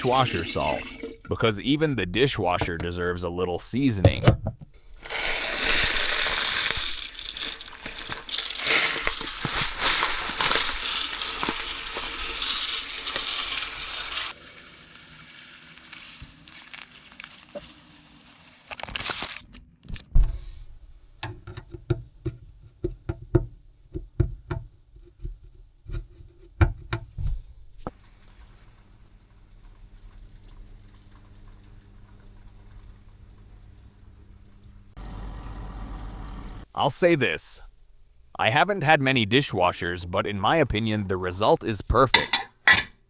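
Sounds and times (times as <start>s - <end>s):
salt granules pouring: 0.0s - 1.0s, 5.0s - 19.6s.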